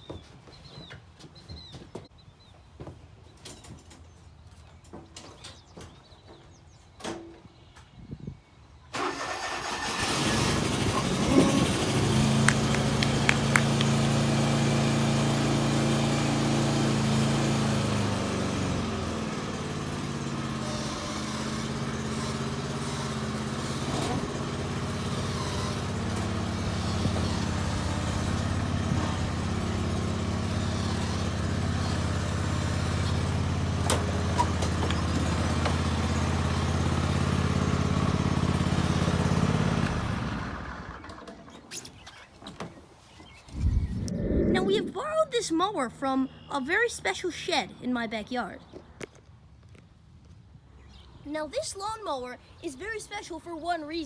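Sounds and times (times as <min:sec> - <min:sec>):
lawn mower engine running: 0:09.0 - 0:41.8.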